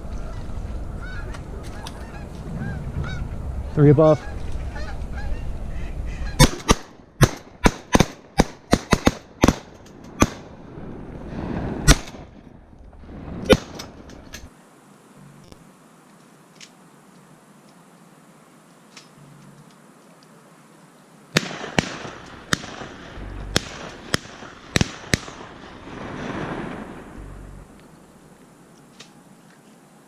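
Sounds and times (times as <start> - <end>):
shotgun shots: 6.4 - 10.5, 11.8 - 12.3, 13.4 - 14.0, 21.4 - 26.8.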